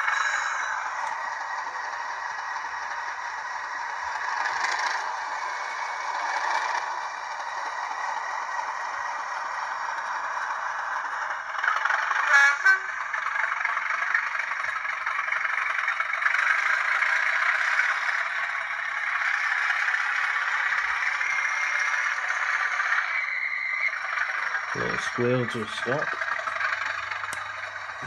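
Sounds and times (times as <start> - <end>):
model locomotive diesel engine sound: 0.0 - 28.0
wheels rattling along track: 0.0 - 28.0.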